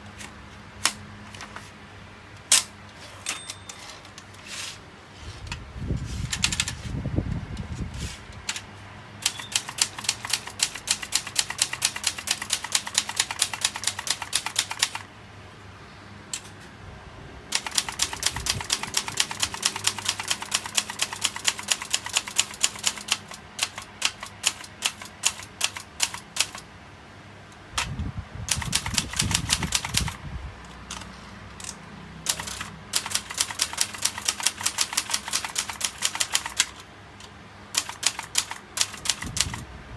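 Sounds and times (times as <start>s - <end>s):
typewriter carriage rumbling sweep: 6.0s - 6.9s, 9.2s - 15.1s, 17.5s - 26.6s, 28.5s - 30.2s, 32.2s - 36.8s, 37.7s - 39.6s
typewriter key strikes: 9.2s - 15.0s, 17.6s - 26.6s, 28.5s - 30.2s, 32.3s - 36.8s, 37.8s - 39.6s.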